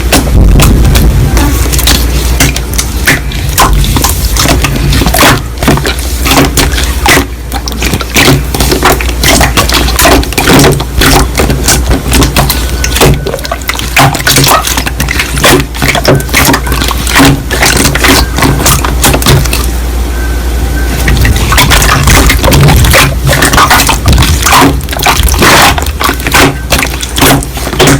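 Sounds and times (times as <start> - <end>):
low rumble: 0.0 - 5.9.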